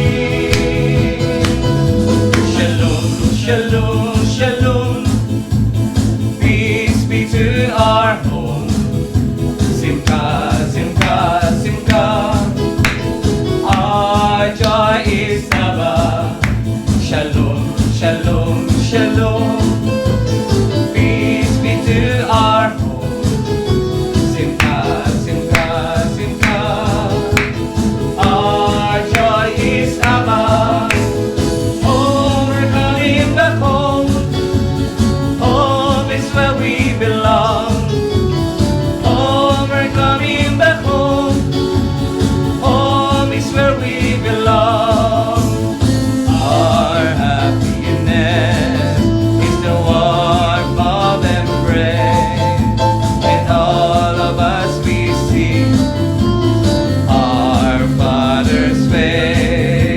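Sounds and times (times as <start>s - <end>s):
instrumental accompaniment with beat: 0.0s - 59.9s
voices singing with vibrato: 0.0s - 59.9s.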